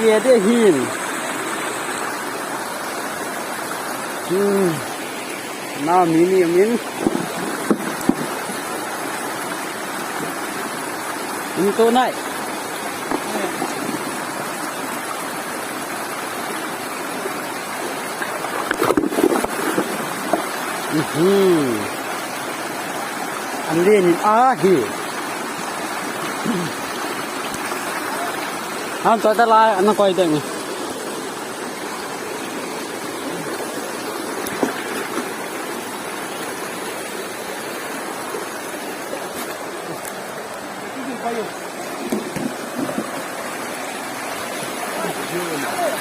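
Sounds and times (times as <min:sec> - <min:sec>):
river water rushing: 0:00.0 - 0:46.0
short knocks or splashes: 0:06.9 - 0:08.6, 0:13.0 - 0:14.3, 0:18.6 - 0:20.6, 0:34.4 - 0:35.3, 0:41.9 - 0:43.3.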